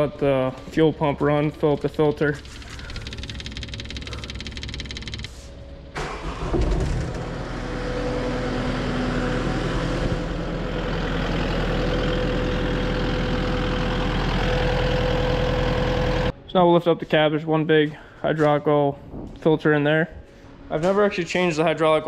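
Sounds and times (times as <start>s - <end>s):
engine cranking and idling: 0.2s - 16.3s
fuel pump ticking: 1.6s - 5.3s.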